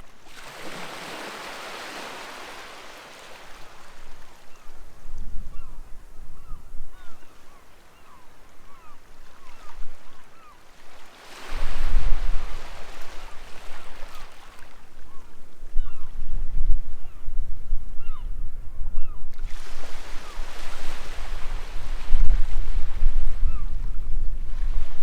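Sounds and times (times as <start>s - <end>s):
sea waves washing on shore: 0.0s - 4.7s, 7.0s - 15.0s, 19.4s - 23.6s.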